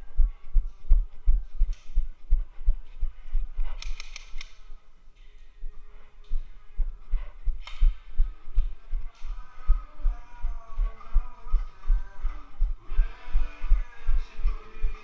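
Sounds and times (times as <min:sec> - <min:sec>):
sharp clicks: 0:03.7 - 0:04.6.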